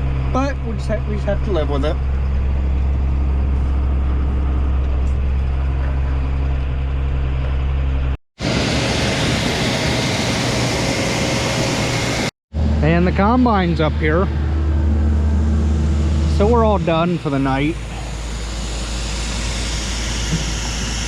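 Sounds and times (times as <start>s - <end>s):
tractor engine droning: 0.0s - 21.0s.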